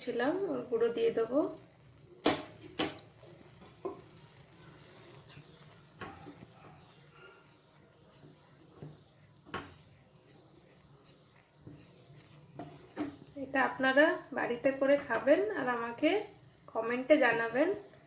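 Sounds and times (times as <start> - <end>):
faint high-pitched chirring: 0.0 - 18.0
milk simmering: 0.9 - 15.6
spoon tapping and scraping a pan: 2.2 - 14.2.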